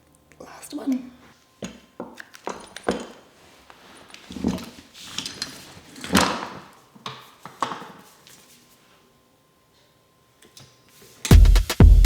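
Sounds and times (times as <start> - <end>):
office chair parts knocking and clicking: 1.6 - 3.3, 4.2 - 8.0.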